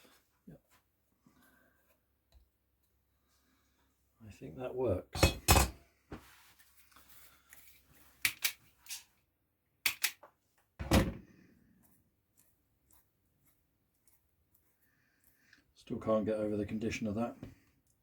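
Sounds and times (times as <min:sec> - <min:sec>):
clicks of hard parts handled: 0:08.2 - 0:09.0, 0:09.8 - 0:10.3.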